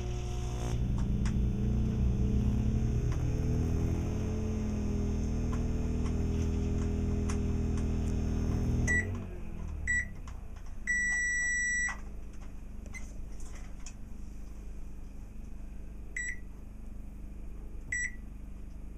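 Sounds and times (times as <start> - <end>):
microwave oven humming: 0.0 - 18.9
microwave beeps: 8.8 - 9.2, 9.8 - 10.2, 10.8 - 12.0, 16.2 - 16.5, 17.9 - 18.3.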